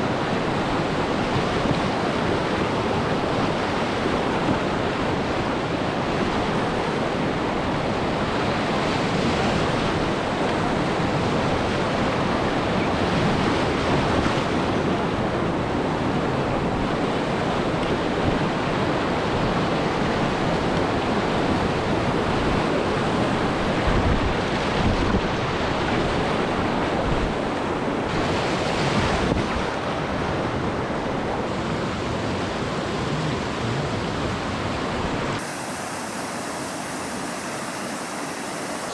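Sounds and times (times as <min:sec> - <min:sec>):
river whitewater roaring: 0:00.0 - 0:38.9
wind buffeting microphone: 0:09.1 - 0:35.5.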